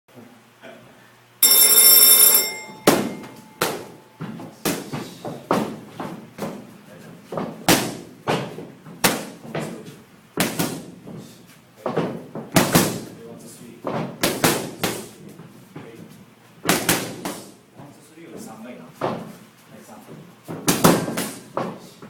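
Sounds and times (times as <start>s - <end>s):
electric bell ringing: 1.4s - 4.2s.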